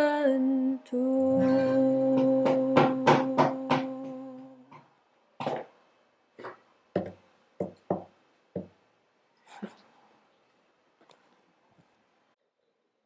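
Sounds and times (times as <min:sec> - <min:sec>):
drum beats: 0:01.3 - 0:04.2.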